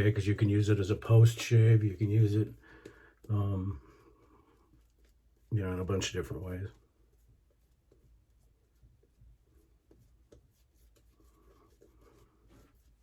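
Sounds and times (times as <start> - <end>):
shaving scratching against face: 3.2 - 13.0.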